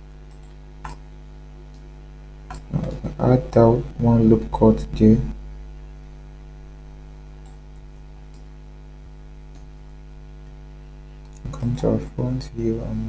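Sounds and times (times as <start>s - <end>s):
electrical mains hum: 0.0s - 13.0s
faint clicks: 0.3s - 1.0s.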